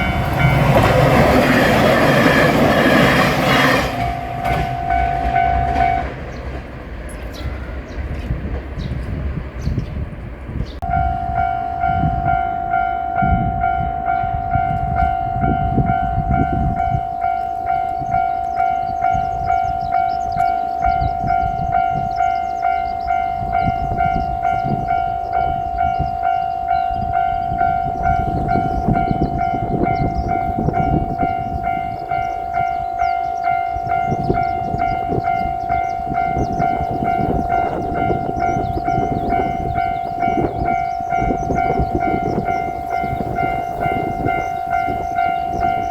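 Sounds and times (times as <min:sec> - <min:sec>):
level-crossing bell ringing: 0:00.0 - 0:06.2, 0:10.8 - 0:45.9
diesel railcar rumble: 0:00.0 - 0:45.9.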